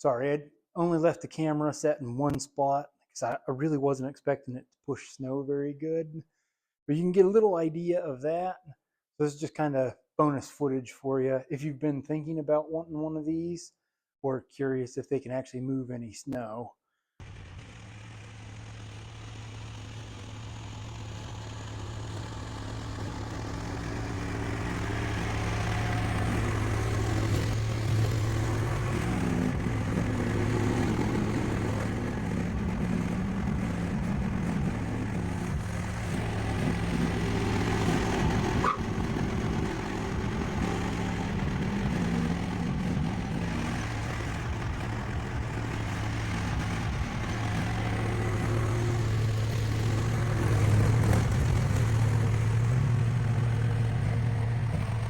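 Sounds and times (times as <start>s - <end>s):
excavator engine running: 17.2s - 55.0s.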